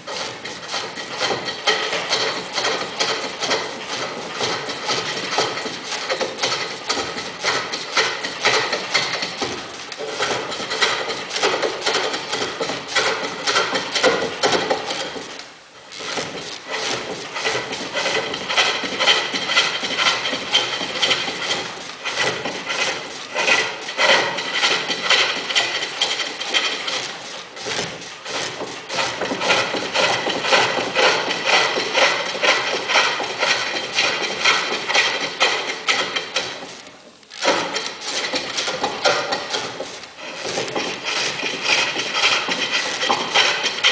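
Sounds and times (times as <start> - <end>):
lathe tool scraping wood: 0.0 - 43.9.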